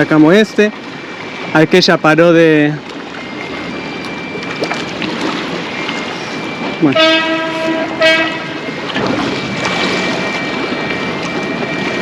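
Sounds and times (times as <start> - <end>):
boat horn blast: 5.4 - 9.0.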